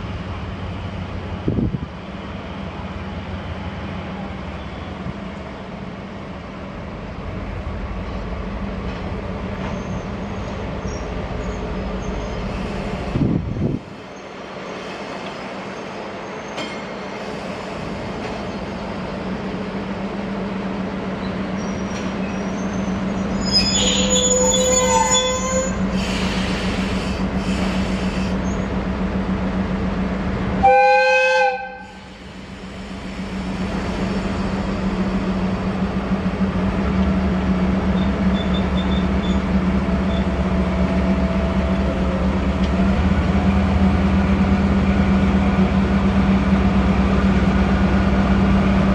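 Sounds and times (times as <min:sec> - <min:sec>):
train horn blasts: 0:24.0 - 0:28.4, 0:30.6 - 0:32.2
locomotive low hum: 0:31.6 - 0:48.9.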